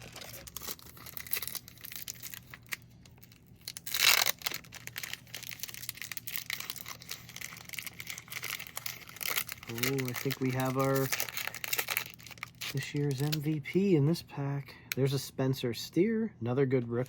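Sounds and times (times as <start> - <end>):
wrapper crinkling: 0.0 - 13.6
wrapper tearing: 0.0 - 13.6.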